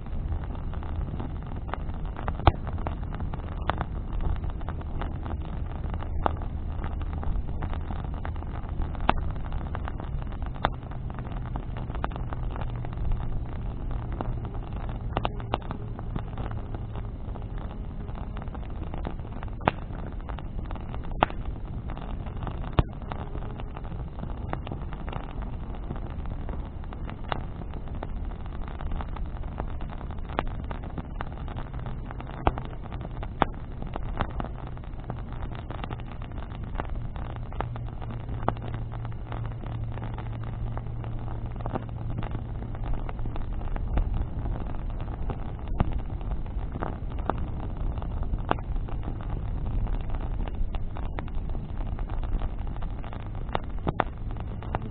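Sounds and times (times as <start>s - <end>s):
bonfire crackling and popping: 0.0s - 54.9s
low droning hum: 0.0s - 54.9s
low rumble: 0.0s - 54.9s.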